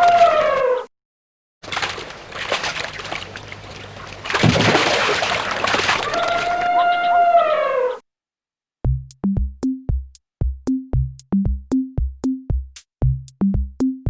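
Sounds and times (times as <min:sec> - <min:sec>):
elephant trumpeting: 0:06.0 - 0:08.0
drum machine beat: 0:08.8 - 0:14.0.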